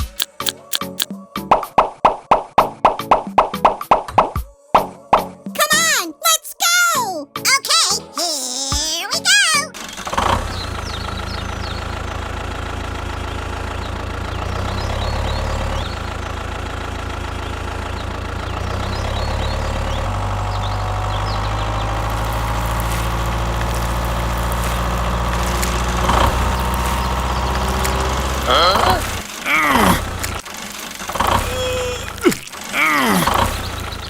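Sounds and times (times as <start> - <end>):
engine idling: 9.8 - 34.0.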